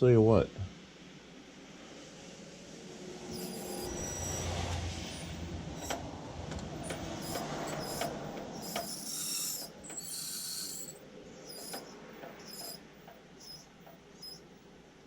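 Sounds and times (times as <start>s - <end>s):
scraping and rattling: 3.4s - 14.4s.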